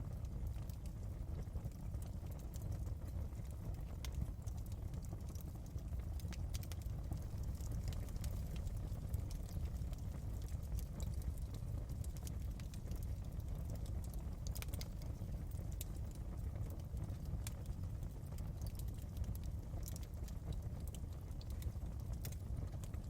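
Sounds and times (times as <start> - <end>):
wood fire crackling: 0.0 - 23.0.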